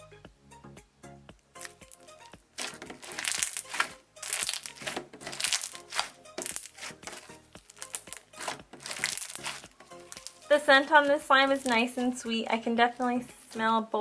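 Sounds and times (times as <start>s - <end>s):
soft background music: 0.0s - 14.0s
slime crackling and popping: 1.4s - 12.0s.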